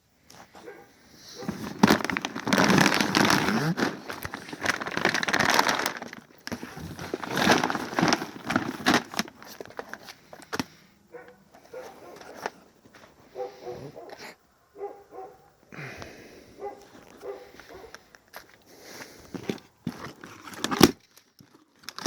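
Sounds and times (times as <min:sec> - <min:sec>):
packaging crinkling and rustling: 0:01.2 - 0:10.7, 0:11.6 - 0:13.1, 0:19.3 - 0:22.0.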